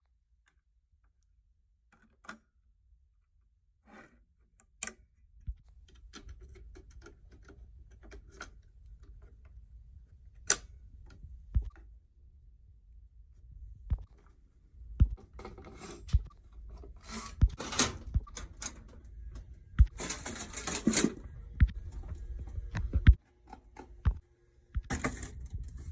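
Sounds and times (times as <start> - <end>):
hard objects clicking and knocking: 15.2 - 24.2, 24.8 - 25.9
low rumble: 21.2 - 23.2.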